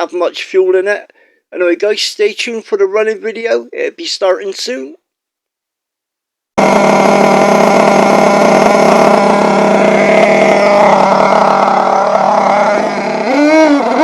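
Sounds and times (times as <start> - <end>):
model truck engine revving: 6.6 - 14.0.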